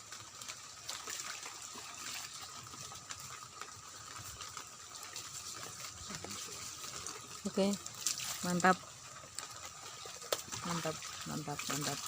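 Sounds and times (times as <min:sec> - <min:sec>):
steady rain: 0:00.0 - 0:01.0
close water drips: 0:00.0 - 0:12.0.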